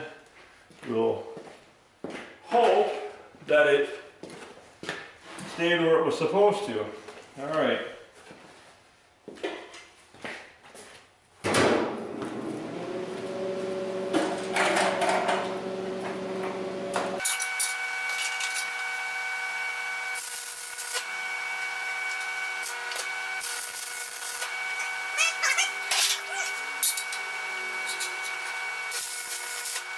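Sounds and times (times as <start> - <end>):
arc welding crackling hiss: 17.2 - 25.2, 25.8 - 29.9.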